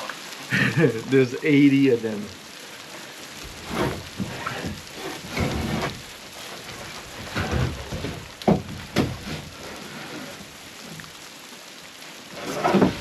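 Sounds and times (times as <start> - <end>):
wooden boards knocking and clattering: 3.4 - 11.1, 12.4 - 13.0.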